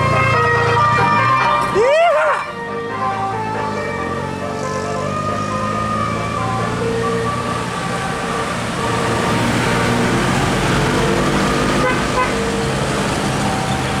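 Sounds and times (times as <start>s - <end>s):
bus engine: 0.0s - 14.0s
traffic: 0.0s - 14.0s
multi-tone musical air horn: 11.8s - 12.5s.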